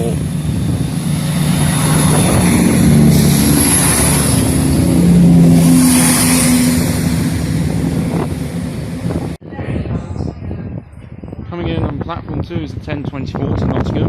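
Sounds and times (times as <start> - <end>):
diesel train engines running: 0.0 - 9.4.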